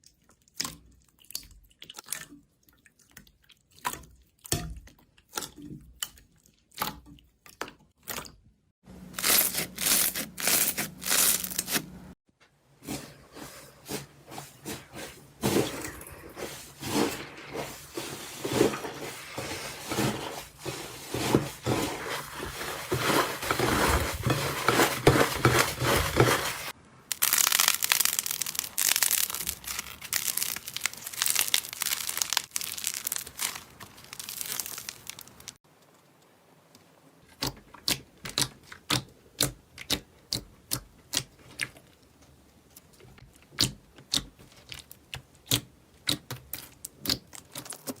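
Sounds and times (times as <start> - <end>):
slime crackling and popping: 27.1 - 35.6.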